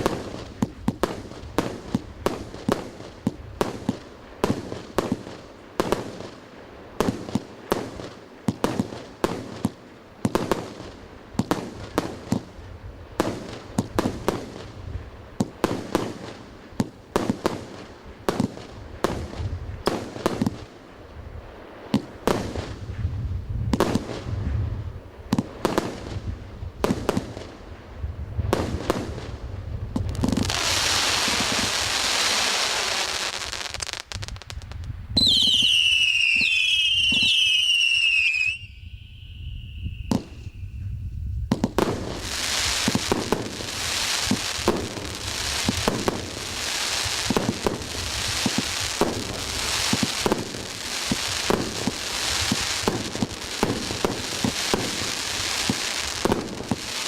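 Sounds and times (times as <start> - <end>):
fireworks bangs: 0.0 - 6.3, 23.6 - 57.0.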